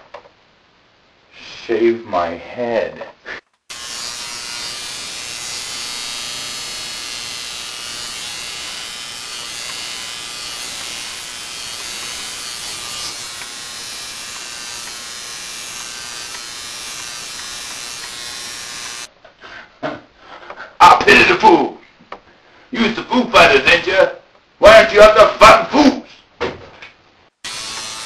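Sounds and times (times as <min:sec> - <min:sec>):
electric hair clippers buzzing: 0:03.7 - 0:19.1, 0:27.4 - 0:28.0.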